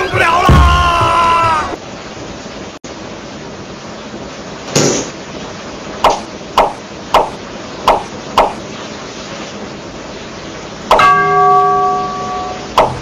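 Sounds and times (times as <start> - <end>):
ringing bell-like strike: 11.0 - 12.7
sharp knocks: 12.8 - 13.0.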